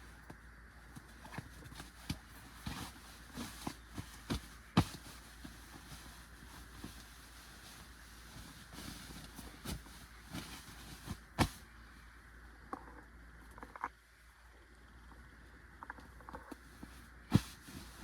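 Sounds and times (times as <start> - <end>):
fabric pillow rustling: 1.0 - 11.7, 16.8 - 18.0.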